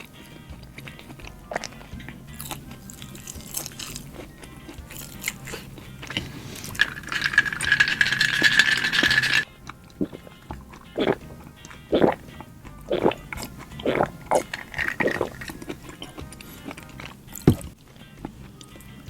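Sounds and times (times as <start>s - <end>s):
close-miked burger eating: 0.0s - 19.0s
soft background music: 0.0s - 19.0s
dense crackling with high tone: 4.9s - 11.3s.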